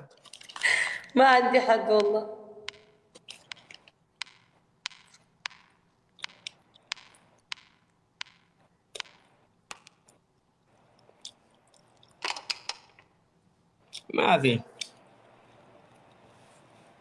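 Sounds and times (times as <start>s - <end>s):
sharp clicks or taps: 2.0s - 10.0s.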